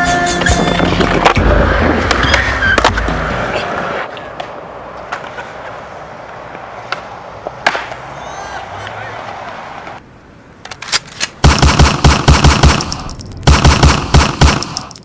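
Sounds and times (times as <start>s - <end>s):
music: 0.0s - 1.4s
skateboard wheels rolling on pavement: 0.0s - 11.4s
skateboard clacks: 0.6s - 8.1s.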